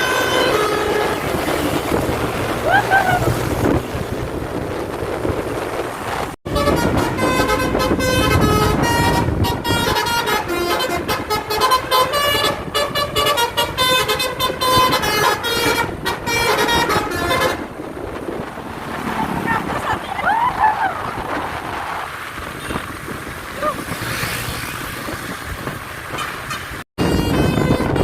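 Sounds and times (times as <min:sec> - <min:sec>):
musical bus horn melody: 0:00.0 - 0:01.9, 0:06.4 - 0:17.8, 0:26.2 - 0:28.0
road noise: 0:00.0 - 0:28.0
wind: 0:00.0 - 0:28.0.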